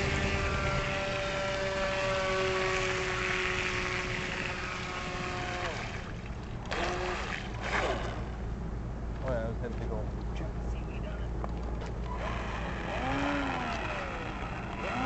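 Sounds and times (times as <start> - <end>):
electric motor whining: 0.0 - 6.0, 12.0 - 15.0
water noise: 0.0 - 9.2, 11.6 - 15.0.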